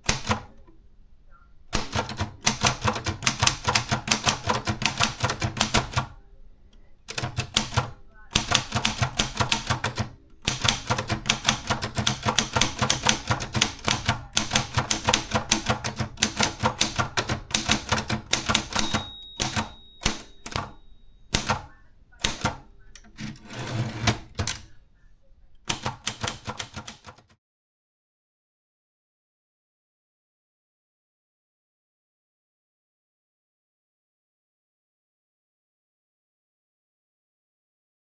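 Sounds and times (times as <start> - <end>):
typewriter key strikes: 1.7 - 6.1, 7.1 - 24.7, 25.7 - 27.3
longer smooth typewriter sound: 1.8 - 6.1, 7.1 - 22.6, 25.7 - 27.3.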